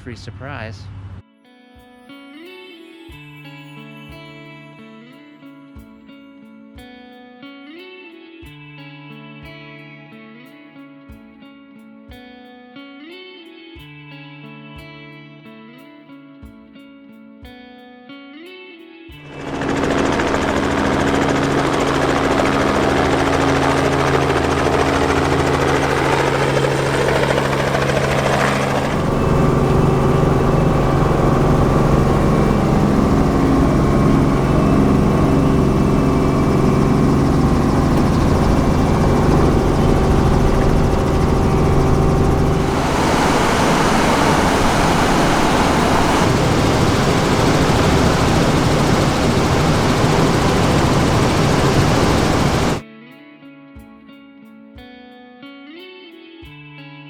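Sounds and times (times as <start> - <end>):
helicopter engine and rotor: 19.3 - 52.8.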